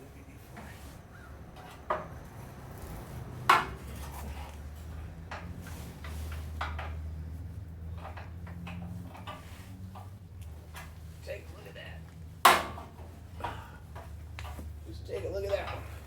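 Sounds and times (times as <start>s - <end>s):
metal tools clinking on metal: 14.4s - 16.0s.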